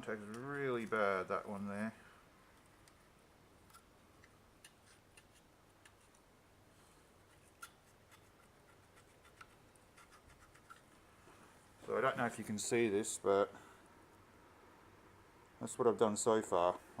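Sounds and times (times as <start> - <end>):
tool clicking and scraping: 3.6 - 6.2, 7.2 - 11.0.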